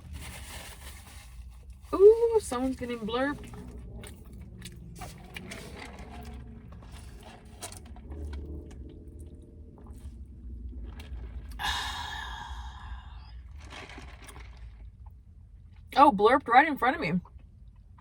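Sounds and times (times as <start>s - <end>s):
chewing: 3.4s - 10.1s.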